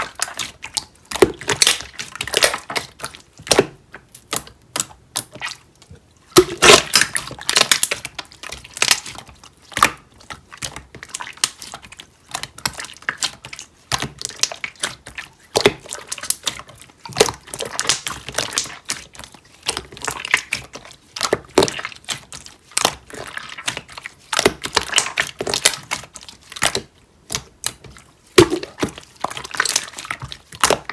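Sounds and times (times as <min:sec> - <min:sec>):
slime crackling and popping: 0:06.4 - 0:09.2, 0:09.8 - 0:19.1, 0:19.7 - 0:30.9.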